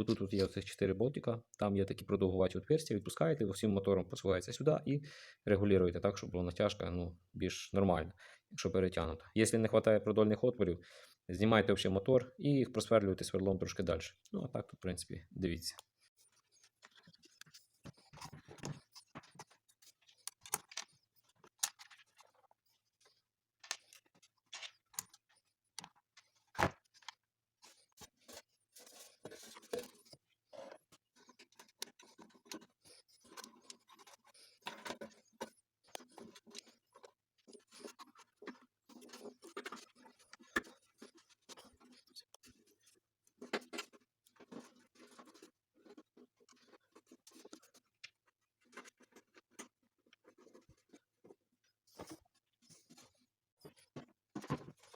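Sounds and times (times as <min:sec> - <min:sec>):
hands handling clicking parts: 0:16.7 - 0:22.4.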